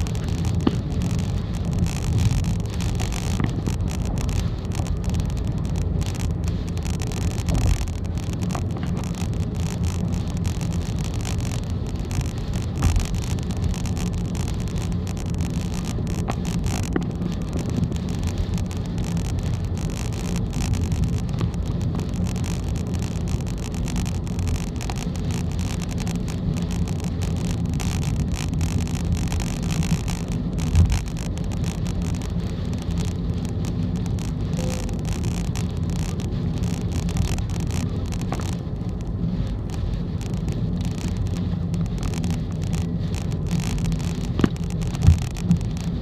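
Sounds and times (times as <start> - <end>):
car road and engine drone: 0.0 - 46.0
heavy rain on car: 0.0 - 46.0
strong wind: 0.0 - 46.0.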